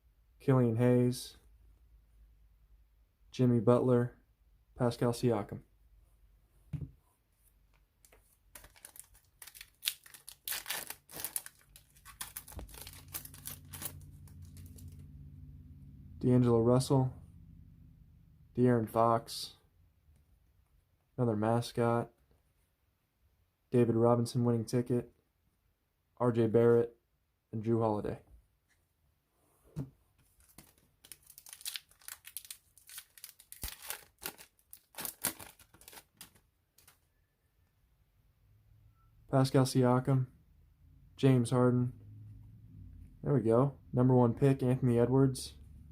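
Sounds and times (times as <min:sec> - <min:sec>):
plastic foil wrapper crinkling: 0:08.5 - 0:15.0, 0:30.4 - 0:37.0.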